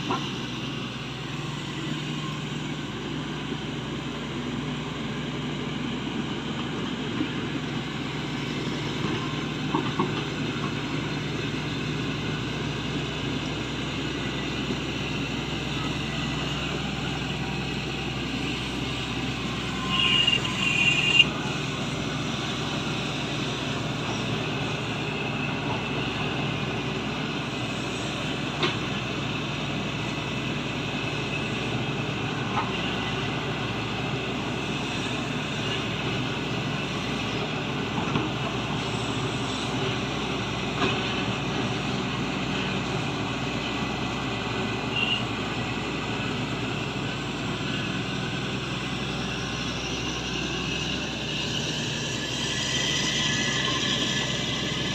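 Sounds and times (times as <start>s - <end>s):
excavator diesel engine running: 0.0s - 54.9s
brief high squeal: 19.4s - 21.3s, 44.9s - 45.3s, 49.6s - 54.9s.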